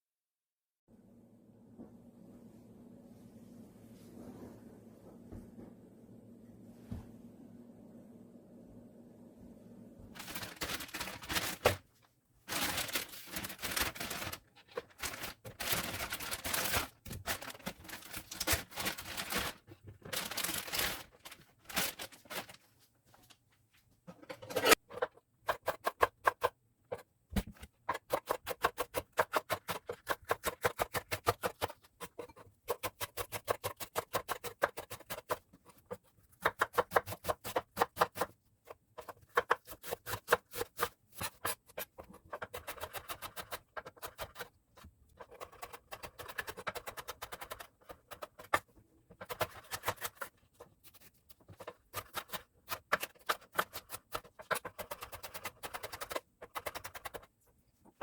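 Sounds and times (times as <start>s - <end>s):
rustling scraping noise: 10.2s - 23.4s.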